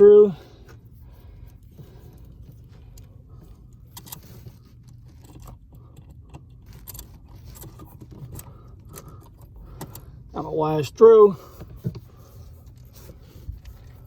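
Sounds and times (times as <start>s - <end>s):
steady low hum: 0.0s - 14.0s
cable rustles and clicks: 0.6s - 10.2s.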